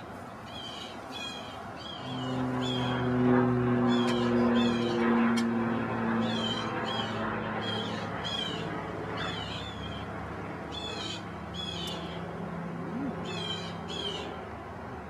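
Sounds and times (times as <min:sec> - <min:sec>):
steady low hum: 0:01.2 - 0:15.0.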